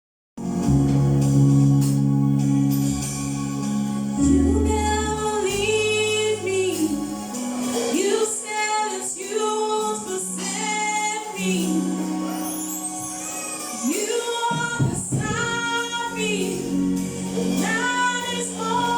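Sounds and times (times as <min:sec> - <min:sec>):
organ chords: 0:00.4 - 0:18.9.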